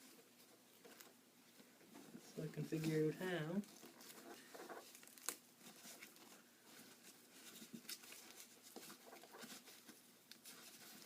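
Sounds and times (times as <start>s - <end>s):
scratching of leg pad handled: 3.7s - 11.0s.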